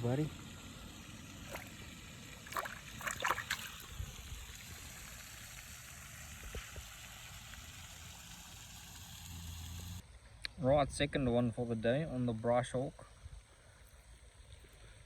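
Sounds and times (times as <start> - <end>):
water splashing: 0.0 - 10.0
faint steady hiss: 0.0 - 15.0.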